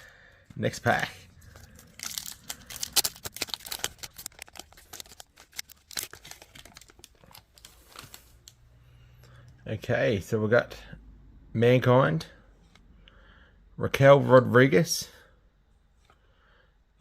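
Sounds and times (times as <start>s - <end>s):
foil wrapper tearing and crinkling: 1.4s - 8.5s.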